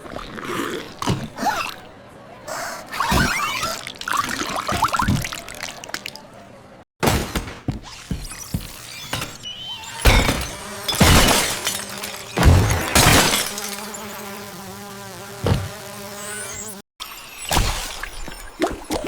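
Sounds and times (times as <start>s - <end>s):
loud crashing noises: 10.0s - 13.9s.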